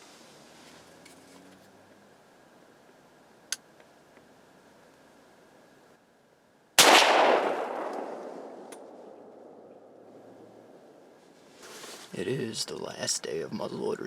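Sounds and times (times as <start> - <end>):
rifle shot with echo: 6.8 - 10.8
sharp click: 7.8 - 8.9.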